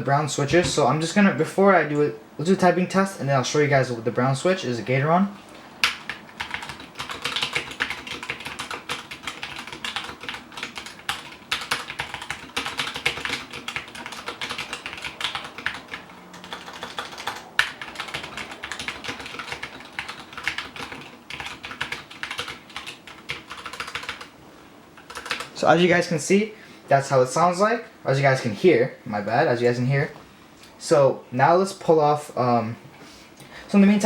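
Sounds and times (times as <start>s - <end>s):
fast typing on mechanical keyboard: 5.8s - 24.3s, 25.0s - 25.6s.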